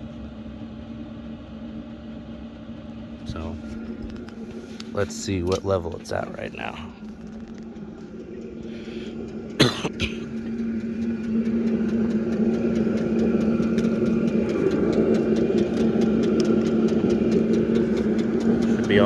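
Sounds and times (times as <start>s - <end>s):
air heater blower humming: 0.0s - 19.0s
faint rapid ticking: 3.8s - 19.0s
sharp clicks: 10.2s - 19.0s.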